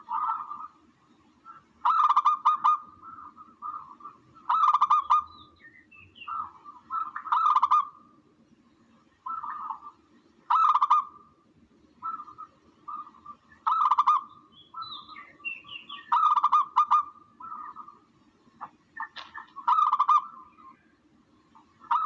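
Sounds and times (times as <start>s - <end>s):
dove cooing: 0.0s - 0.8s, 1.5s - 5.3s, 6.3s - 8.0s, 9.3s - 9.9s, 10.5s - 11.2s, 12.0s - 14.3s, 15.9s - 18.0s, 18.6s - 20.7s, 21.8s - 22.0s.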